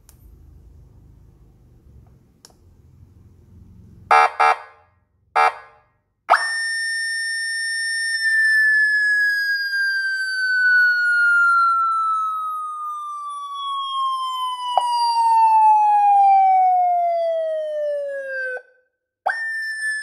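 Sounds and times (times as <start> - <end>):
motorcycle siren chirps: 4.1 - 20.0
siren wail: 6.3 - 20.0.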